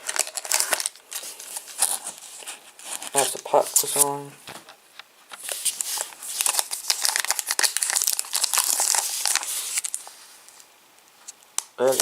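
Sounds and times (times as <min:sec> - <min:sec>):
foil packet crinkling and tearing: 0:00.0 - 0:04.0, 0:05.4 - 0:10.1.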